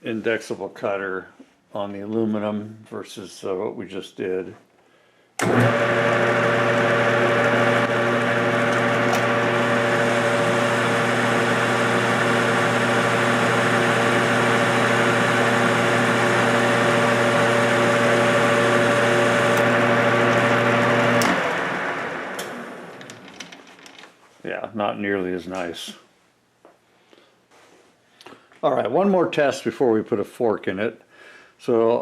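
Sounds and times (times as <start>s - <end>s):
metal lathe running: 5.4s - 23.2s.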